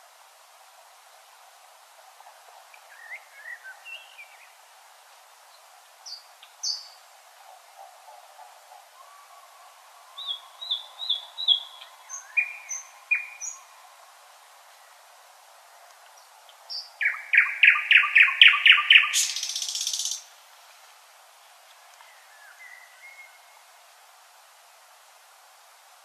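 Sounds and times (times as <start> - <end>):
nightingale singing: 2.7 - 4.6, 6.0 - 7.0, 10.1 - 14.0, 15.8 - 20.3.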